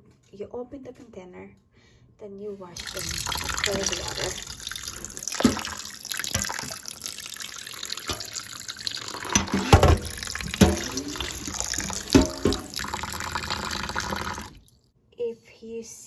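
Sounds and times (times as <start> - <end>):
bowl knocking: 2.8 - 14.6
tap water running into sink: 2.8 - 14.6
water splashes: 2.8 - 14.7.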